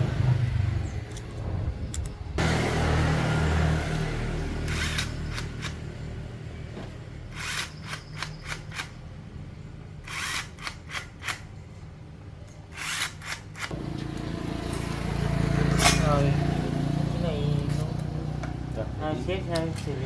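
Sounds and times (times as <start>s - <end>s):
small petrol engine idling: 13.7s - 19.5s.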